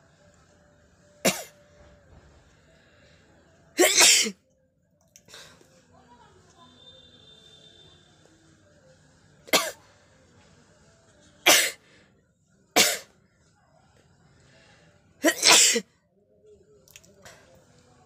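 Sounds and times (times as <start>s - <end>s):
person sneezing: 3.8s - 4.4s, 11.5s - 11.8s, 15.2s - 15.8s.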